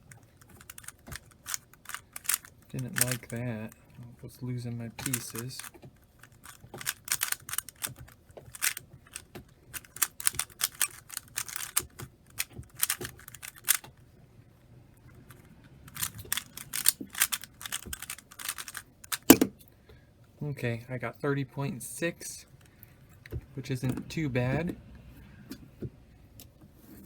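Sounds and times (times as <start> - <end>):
speed cube clicking turns: 0.0 - 3.5, 4.9 - 13.9, 15.4 - 19.4.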